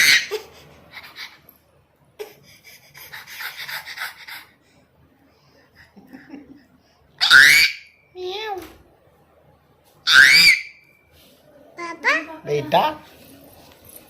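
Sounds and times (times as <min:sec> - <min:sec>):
child panting like a puppy: 0:02.2 - 0:04.7.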